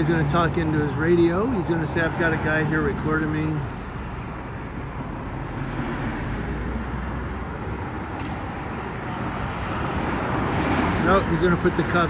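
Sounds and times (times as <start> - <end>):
street traffic noise: 0.0 - 12.0.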